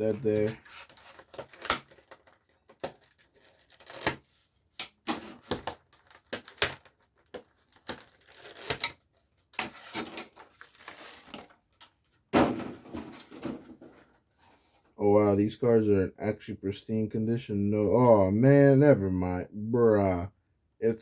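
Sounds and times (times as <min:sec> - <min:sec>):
foil wrapper tearing and crinkling: 0:00.2 - 0:04.2, 0:05.2 - 0:09.0.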